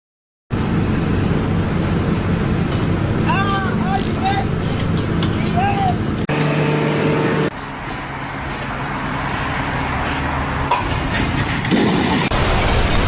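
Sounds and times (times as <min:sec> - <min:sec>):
engine running steadily: 0:00.5 - 0:07.5.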